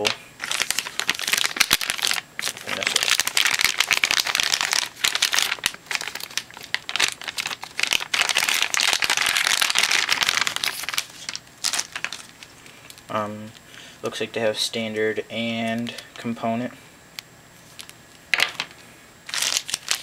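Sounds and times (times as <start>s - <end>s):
packaging crinkling: 0.0s - 13.1s, 17.6s - 20.0s.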